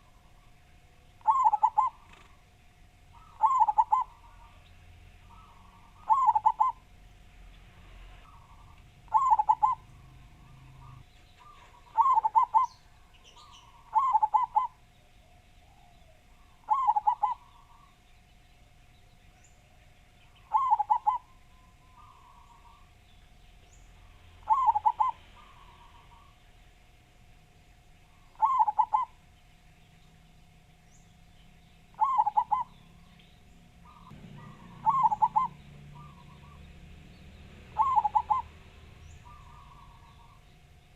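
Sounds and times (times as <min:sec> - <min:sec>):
dove cooing: 0:01.2 - 0:02.5, 0:03.1 - 0:06.9, 0:08.2 - 0:18.0, 0:20.3 - 0:22.9, 0:24.3 - 0:26.4, 0:28.1 - 0:29.2, 0:31.9 - 0:32.8, 0:33.8 - 0:36.6, 0:37.7 - 0:40.4.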